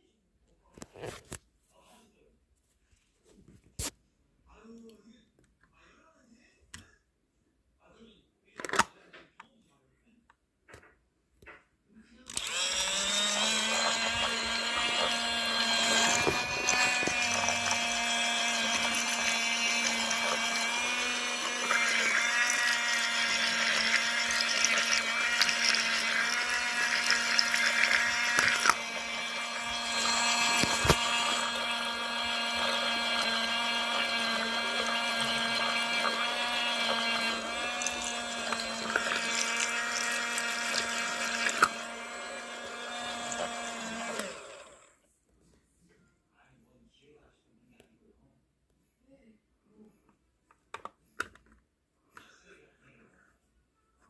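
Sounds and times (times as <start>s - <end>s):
small electric motor whining: 12.3s - 45.0s.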